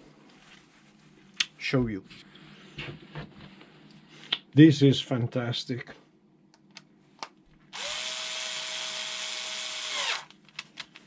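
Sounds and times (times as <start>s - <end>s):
small electric motor whirring: 7.7s - 10.3s.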